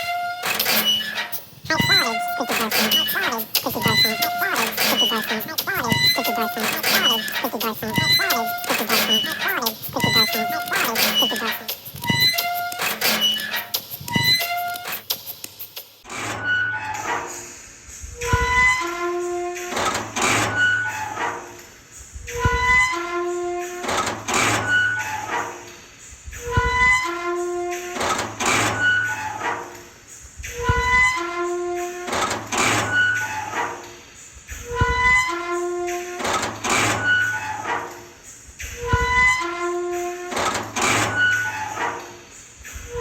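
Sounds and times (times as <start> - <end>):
squeaky door hinge creaking: 0.0 - 15.3.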